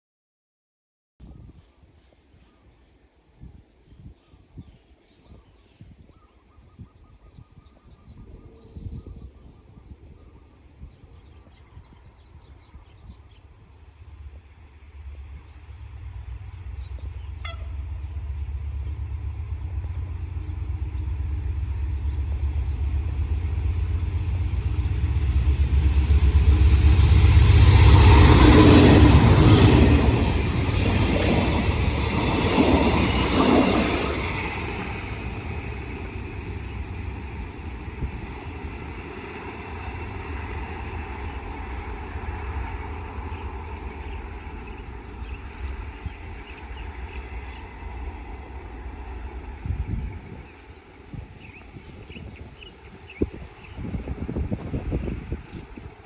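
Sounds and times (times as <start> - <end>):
locomotive engine rumble: 11.6 - 56.0
train wheels clattering over rails: 19.6 - 51.4.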